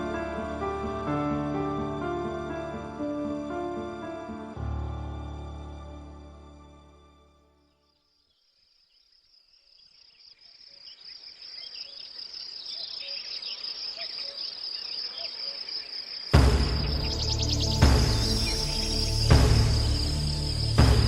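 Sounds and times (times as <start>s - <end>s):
crickets chirping: 7.7s - 21.0s
loud burst of music: 16.4s - 21.0s.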